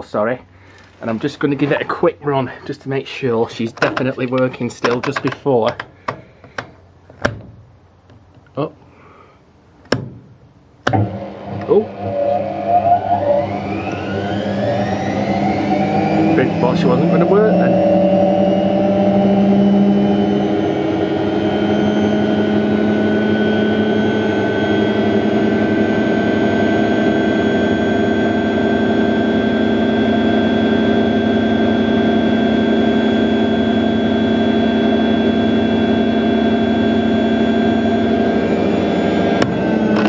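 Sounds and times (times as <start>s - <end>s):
washing machine motor hum: 10.8s - 40.0s.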